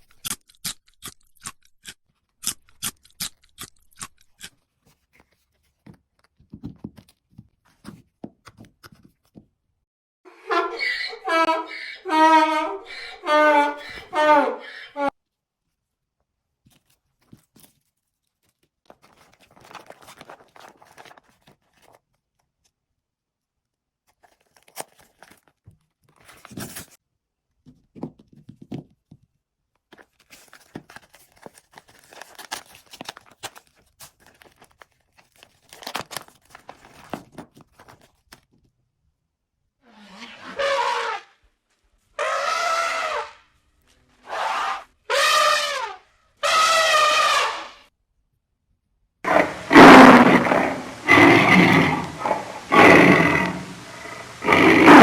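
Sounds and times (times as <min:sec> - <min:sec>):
plastic or paper rustling: 0:16.6 - 0:22.5, 0:24.1 - 0:27.0, 0:29.9 - 0:38.7.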